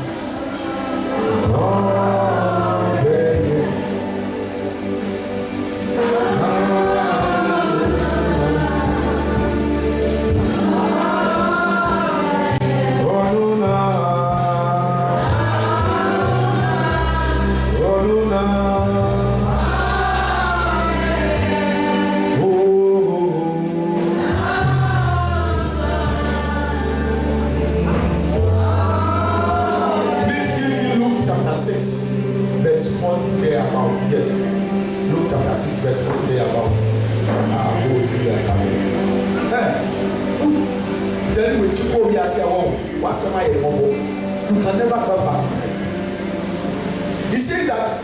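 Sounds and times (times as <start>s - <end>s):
bass line of held notes: 0.0s - 48.0s
group gospel singing: 0.0s - 48.0s.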